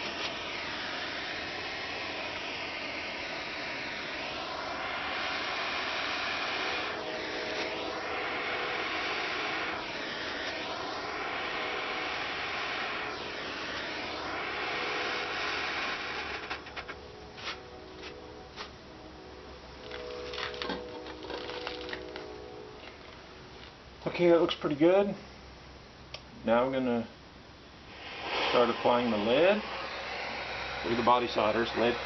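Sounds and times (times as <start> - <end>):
propane torch hissing: 0.0 - 18.8, 27.8 - 32.0.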